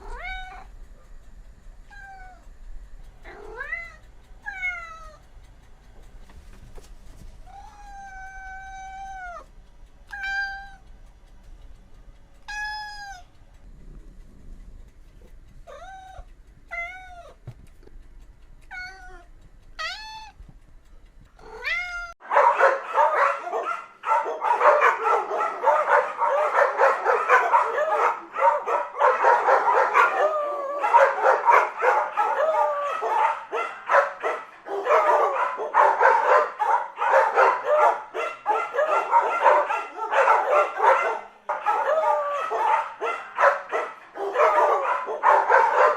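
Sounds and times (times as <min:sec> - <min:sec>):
cat meowing: 0:00.0 - 0:00.7, 0:01.9 - 0:02.5, 0:03.2 - 0:05.2, 0:07.4 - 0:09.5, 0:10.1 - 0:10.8, 0:12.4 - 0:13.3, 0:15.6 - 0:17.4, 0:18.6 - 0:20.4, 0:21.4 - 0:22.2, 0:30.0 - 0:31.0
dog yipping and whining: 0:21.4 - 0:22.2, 0:22.9 - 0:37.9.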